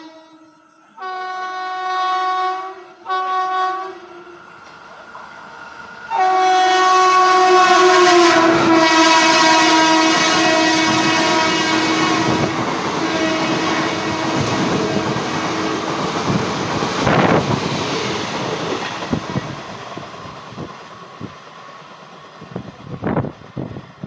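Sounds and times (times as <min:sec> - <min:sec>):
train horn blast: 0:00.0 - 0:04.5, 0:06.1 - 0:15.9
train rushing past: 0:00.0 - 0:24.0.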